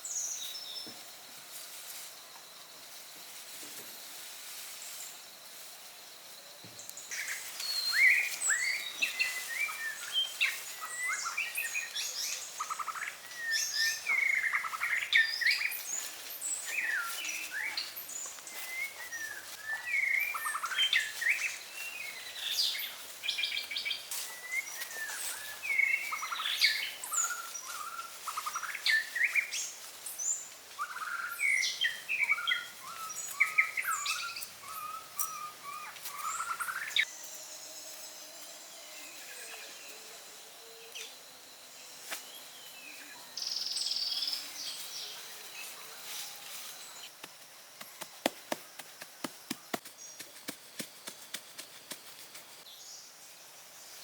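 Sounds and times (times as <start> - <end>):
faint steady hiss: 0.0 - 54.0
birds chirping: 6.7 - 46.0.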